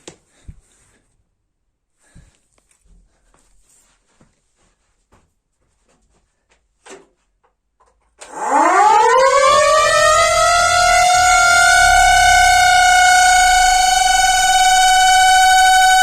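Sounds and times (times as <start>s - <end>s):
siren steady tone: 8.3s - 16.0s.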